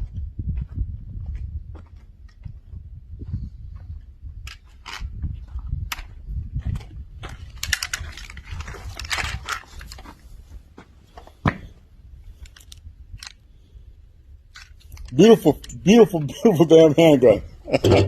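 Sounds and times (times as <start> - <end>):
handgun handling rustling: 4.4 - 5.1, 7.2 - 10.4, 12.3 - 13.6, 14.5 - 16.3
small clicks of a handgun: 12.4 - 13.6.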